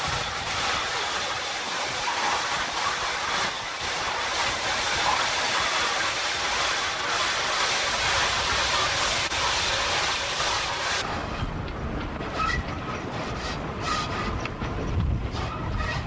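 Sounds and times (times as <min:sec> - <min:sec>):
wheel squeals: 0:00.0 - 0:04.2, 0:12.3 - 0:16.0
rail clicks: 0:00.0 - 0:16.0
steam locomotive hiss: 0:00.0 - 0:16.0
train running rumble: 0:00.0 - 0:16.0.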